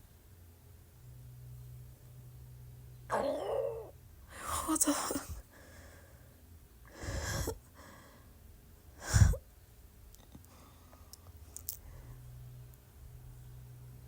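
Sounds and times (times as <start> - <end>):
person croaking from throat: 3.1 - 3.9.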